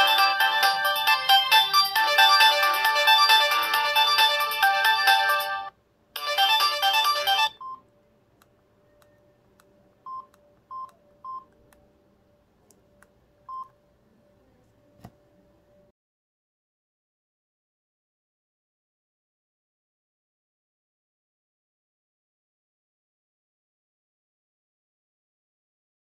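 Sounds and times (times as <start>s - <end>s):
polyphonic ringtone melody: 0.0s - 7.6s.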